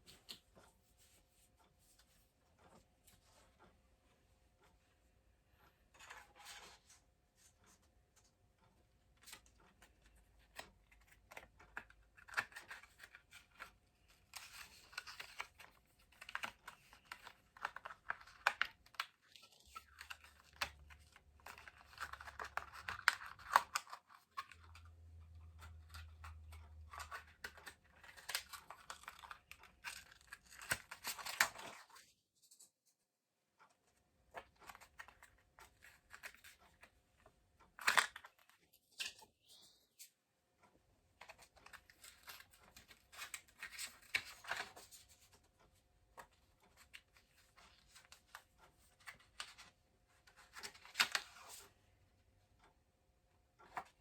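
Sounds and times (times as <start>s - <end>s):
plastic parts rustling and crinkling: 9.2s - 32.7s, 41.2s - 51.7s.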